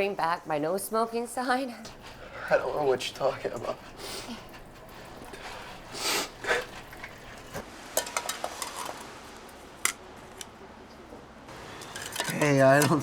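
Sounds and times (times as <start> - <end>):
small hard objects clinking: 11.8 - 13.0.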